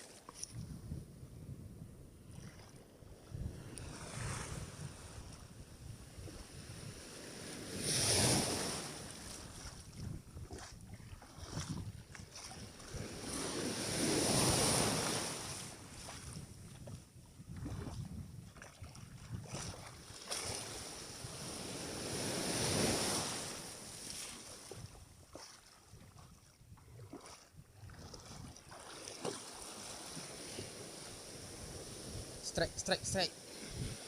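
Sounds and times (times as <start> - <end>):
sea waves washing on shore: 3.3 - 16.6, 19.6 - 25.7, 28.1 - 34.0.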